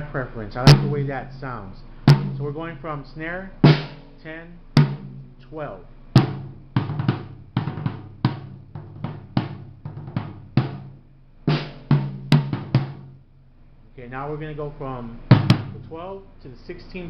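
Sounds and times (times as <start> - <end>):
loose rack tom hits: 0.6 - 1.2, 2.1 - 2.7, 3.6 - 4.2, 4.8 - 5.6, 6.2 - 13.2, 15.2 - 16.0
snare drum hits: 0.7 - 1.0, 6.2 - 13.2, 15.3 - 15.8.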